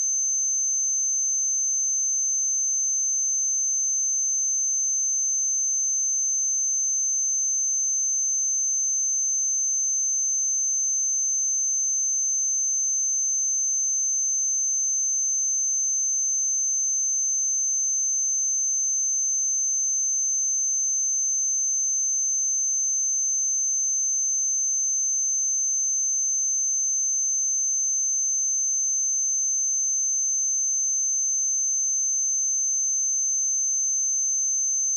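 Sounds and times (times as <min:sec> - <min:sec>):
high-pitched sine test tone: 0:21.3 - 0:34.9.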